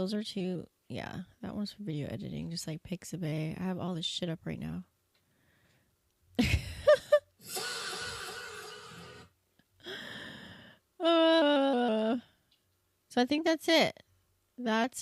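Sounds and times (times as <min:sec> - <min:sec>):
breathy sigh-like hiss: 0:07.4 - 0:10.8.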